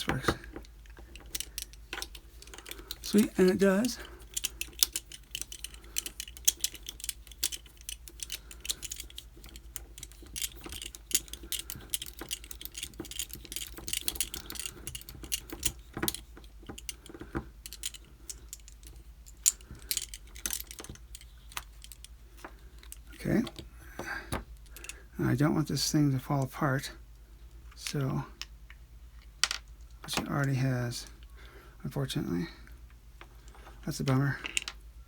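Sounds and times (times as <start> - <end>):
padlock metallic clicks and rattles: 0.0 - 22.2.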